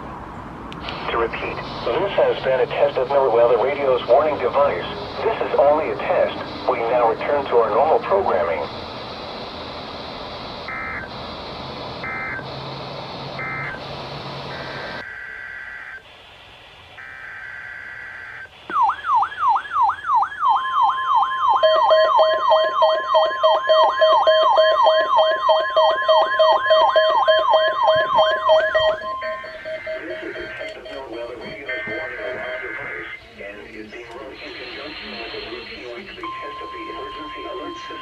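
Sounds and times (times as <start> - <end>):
warbling siren-like alert tone: 10.7 - 11.1, 12.0 - 12.6, 13.4 - 13.9, 17.0 - 33.2
alert data bursts: 10.7 - 11.2, 21.6 - 33.2, 34.3 - 38.0
pulsing low beep: 21.6 - 33.2, 34.4 - 38.0
steady tone: 21.6 - 33.3, 33.9 - 38.0.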